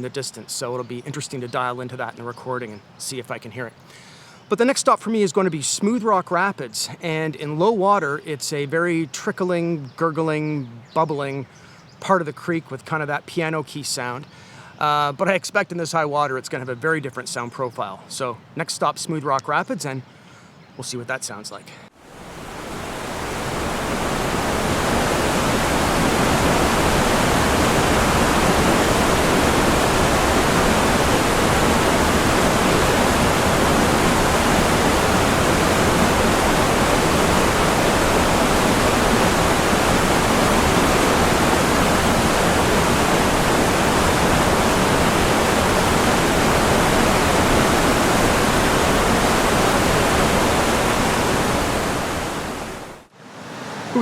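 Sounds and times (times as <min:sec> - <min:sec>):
rapids rushing over a ledge: 0:22.0 - 0:54.0.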